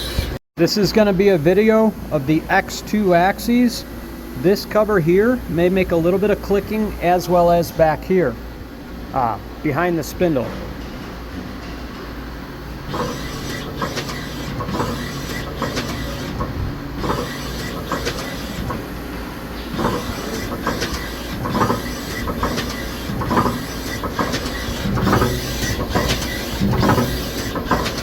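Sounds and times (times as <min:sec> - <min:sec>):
machine hum: 0:00.0 - 0:28.0
machine clicks and clunks: 0:12.8 - 0:18.9, 0:19.6 - 0:28.0.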